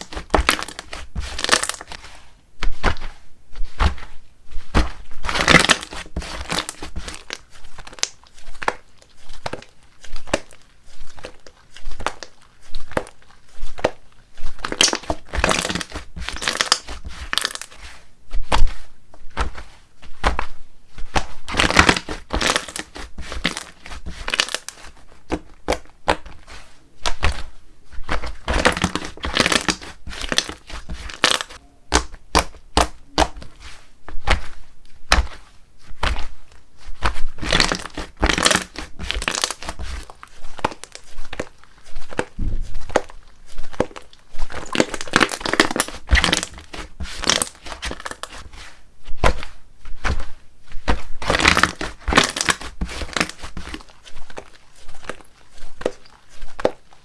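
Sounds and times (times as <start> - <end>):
slime squishing and popping: 4.7 - 8.8, 14.6 - 17.7, 21.1 - 26.3, 28.1 - 33.5, 37.0 - 48.3, 50.9 - 56.8.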